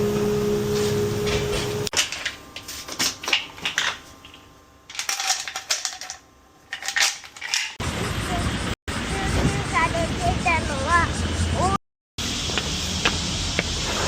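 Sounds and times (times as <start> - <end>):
steady hum: 0.0 - 2.6
clinks of small hard objects: 3.6 - 7.8.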